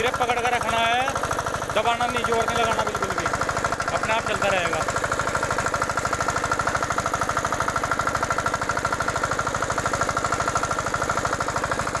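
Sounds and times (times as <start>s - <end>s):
engine chugging with high whine: 0.0s - 12.0s.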